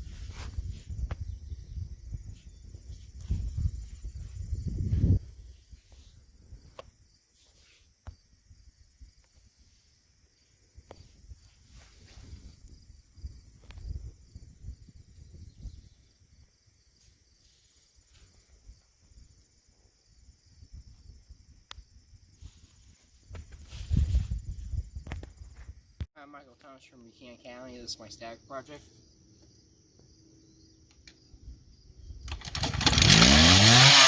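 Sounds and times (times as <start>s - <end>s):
sharp clicks: 32.2s - 34.0s.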